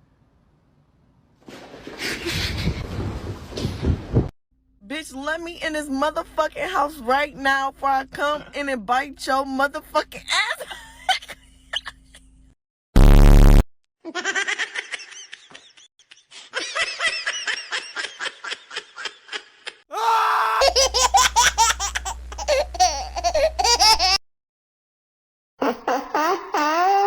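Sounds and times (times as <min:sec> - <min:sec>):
loud burst of noise: 0:13.0 - 0:13.6.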